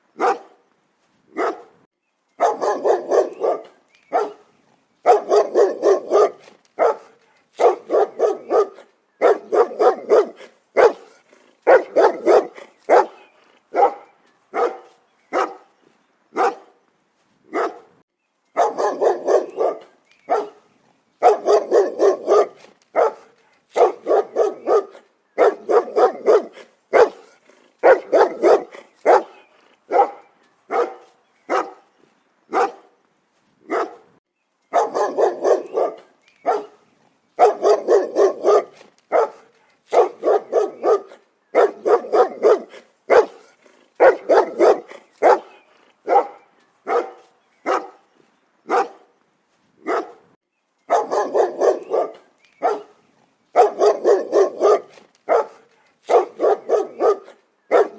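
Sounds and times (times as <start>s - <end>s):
dog barking: 0.2s - 0.6s, 1.4s - 1.8s, 2.4s - 15.7s, 16.4s - 16.8s, 17.5s - 18.0s, 18.6s - 31.9s, 32.5s - 33.0s, 33.7s - 34.1s, 34.7s - 36.8s, 37.4s - 48.0s, 48.7s - 49.1s, 49.8s - 50.3s, 50.9s - 57.9s.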